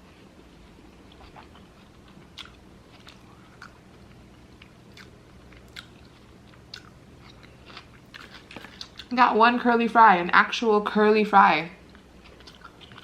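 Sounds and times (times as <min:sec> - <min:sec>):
chewing food: 0:00.5 - 0:09.2, 0:11.8 - 0:13.0.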